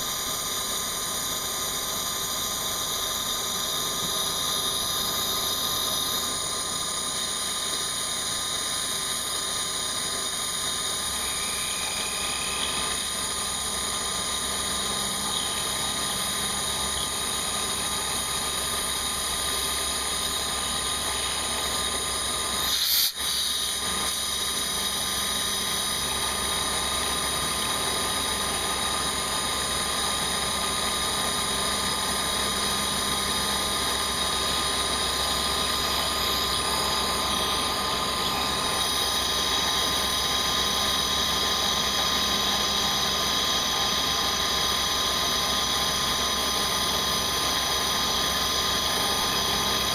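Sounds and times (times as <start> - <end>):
milling machine spindle whine: 0.0 - 49.9.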